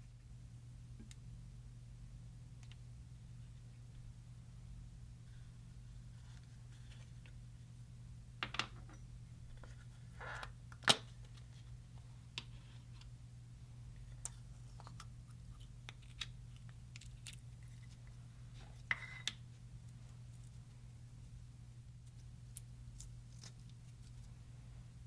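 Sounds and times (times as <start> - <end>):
low steady hum: 0.0 - 25.0.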